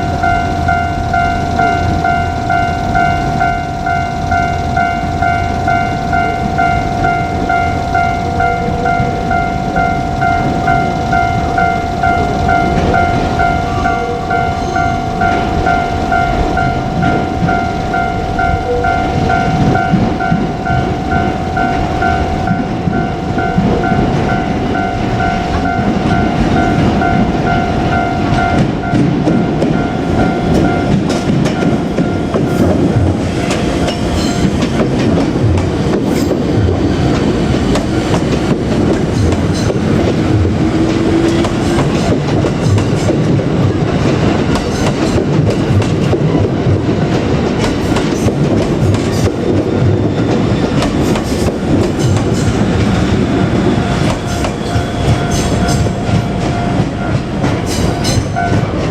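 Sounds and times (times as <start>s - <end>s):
electric train rumbling past: 0.0s - 58.9s
level crossing warning bell: 0.0s - 58.9s.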